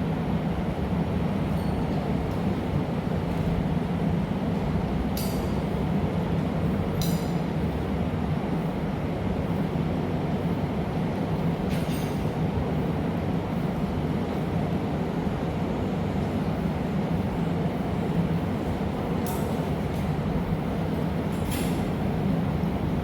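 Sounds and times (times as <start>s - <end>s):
gas furnace roaring: 12.8s - 23.0s.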